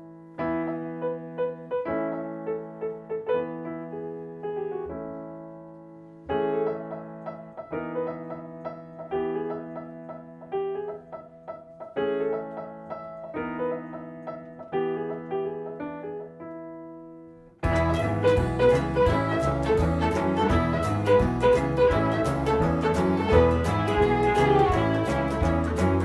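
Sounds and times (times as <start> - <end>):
slow solo piano: 0.0 - 26.0
louder fuller music: 17.6 - 26.0.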